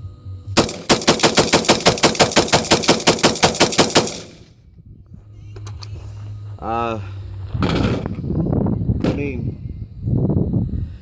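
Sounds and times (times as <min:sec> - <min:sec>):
rapid rifle gunshots: 0:00.6 - 0:04.5.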